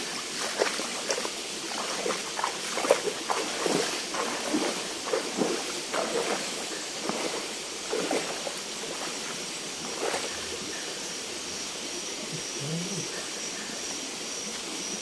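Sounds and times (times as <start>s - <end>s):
water sloshing and splashing: 0.0s - 10.8s
stream water flowing: 0.0s - 15.0s.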